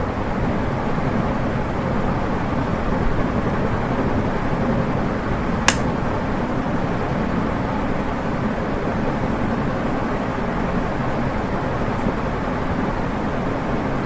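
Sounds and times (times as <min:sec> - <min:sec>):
ceiling fan humming: 0:00.0 - 0:14.0
sharp click: 0:05.6 - 0:05.9.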